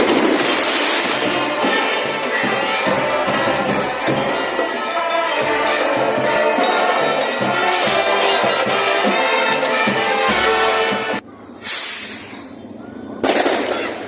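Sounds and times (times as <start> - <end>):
music: 0.4 - 11.2
sleigh bells jingling with music: 0.4 - 11.6.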